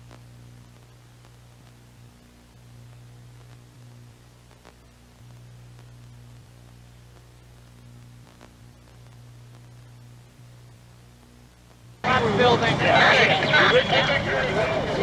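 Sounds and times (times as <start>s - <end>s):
faint clicks: 0.0s - 12.0s
faint electrical hum: 0.0s - 15.0s.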